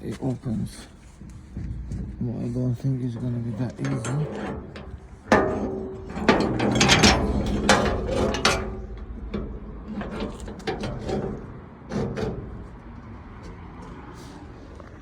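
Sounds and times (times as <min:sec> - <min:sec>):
padlock metal clanks and knocks: 0:03.5 - 0:12.8.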